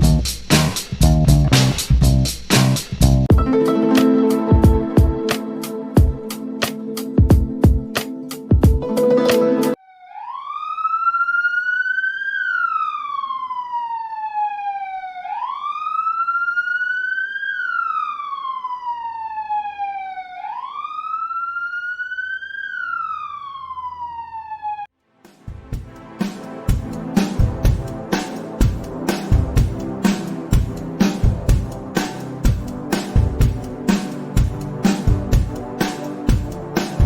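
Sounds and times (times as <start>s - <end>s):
music: 0.0s - 9.8s, 25.0s - 37.0s
wailing siren: 9.7s - 24.9s, 26.7s - 37.0s.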